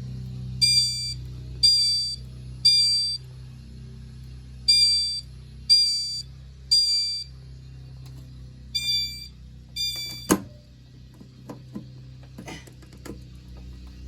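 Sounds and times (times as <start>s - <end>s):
fire alarm electronic tones: 0.6s - 3.3s, 4.7s - 7.3s, 8.7s - 10.6s.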